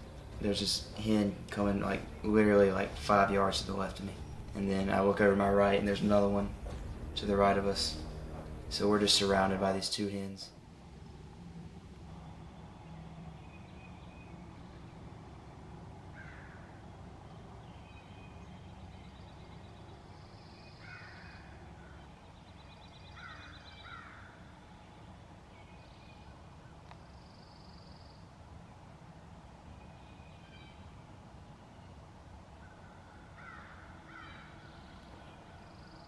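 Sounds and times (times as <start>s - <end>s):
harsh falling bird calls: 0.0s - 9.8s, 16.2s - 26.4s, 32.5s - 36.0s
trilling songbird notes: 0.0s - 9.8s.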